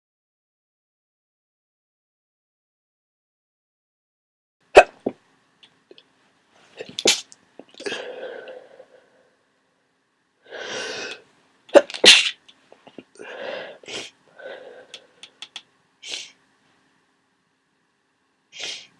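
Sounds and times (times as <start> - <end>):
person sneezing wetly: 4.8 - 5.1, 10.6 - 12.4
breathy sounds: 7.7 - 9.4, 10.4 - 11.3, 12.9 - 15.4.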